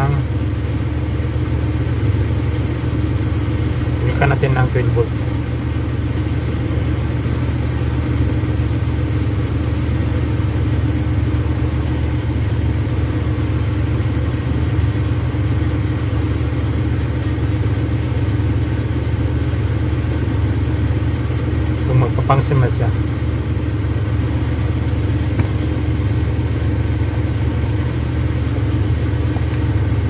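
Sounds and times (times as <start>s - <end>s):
low mechanical hum: 0.0s - 30.0s.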